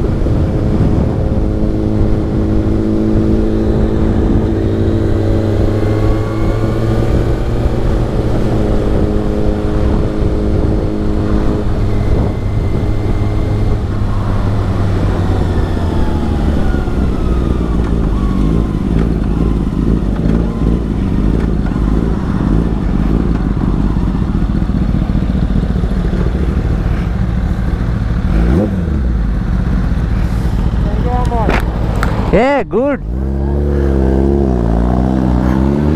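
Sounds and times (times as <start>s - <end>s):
wind rushing: 0.0s - 27.2s
motorcycle engine running: 0.0s - 32.4s.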